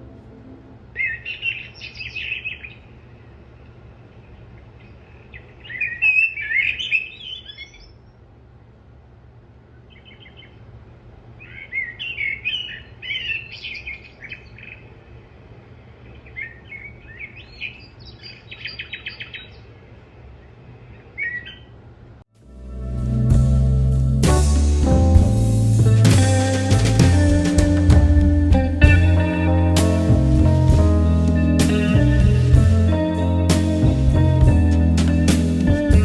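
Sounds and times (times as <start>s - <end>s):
birds chirping and twittering: 0.9s - 8.2s, 9.7s - 10.7s, 11.4s - 21.8s, 25.6s - 36.0s
low steady hum: 22.4s - 36.0s.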